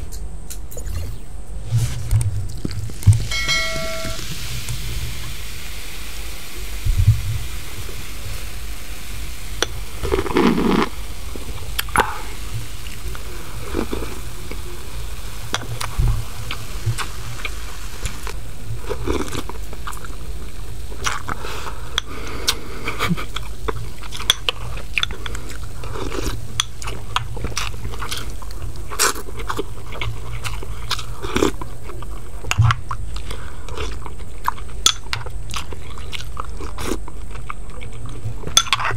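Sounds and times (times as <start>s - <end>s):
low hum: 0.0s - 26.6s
person chewing crunchy food: 1.8s - 3.4s, 9.2s - 38.9s.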